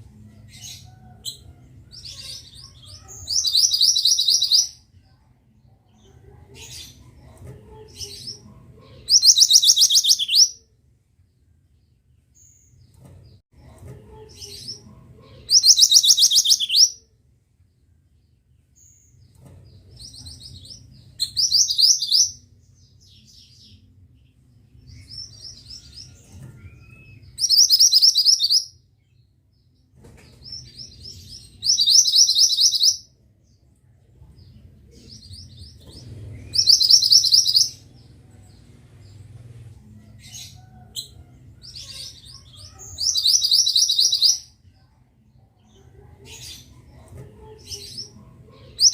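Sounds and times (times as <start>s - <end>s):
soft bird chirps: 0.5s - 5.1s, 9.1s - 10.6s, 15.4s - 17.0s, 18.6s - 23.9s, 24.8s - 29.3s, 30.1s - 33.0s, 33.6s - 39.2s, 41.7s - 44.5s.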